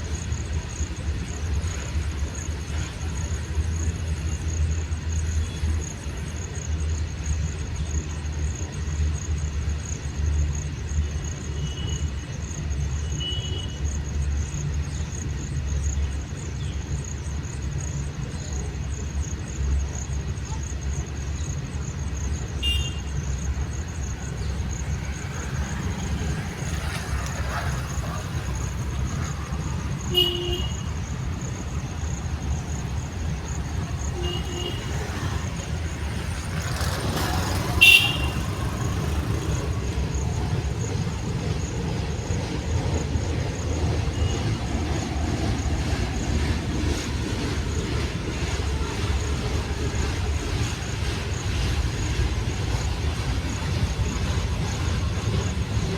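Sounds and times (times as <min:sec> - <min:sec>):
rumble of moving rail traffic: 0:00.0 - 0:55.9
short horn toots: 0:37.7 - 0:38.7.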